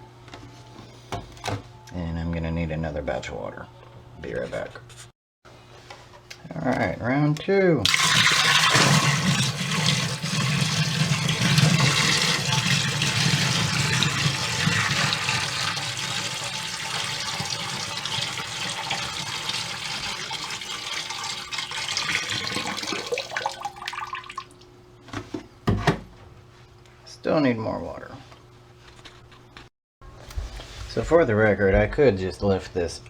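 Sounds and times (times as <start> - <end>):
water splashing into pit: 7.9 - 18.7.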